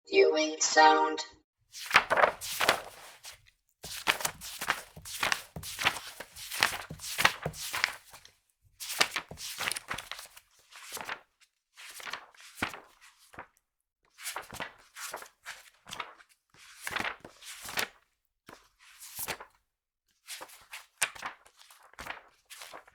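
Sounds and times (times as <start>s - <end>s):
magazine pages flipping: 1.8s - 11.2s, 16.9s - 17.1s.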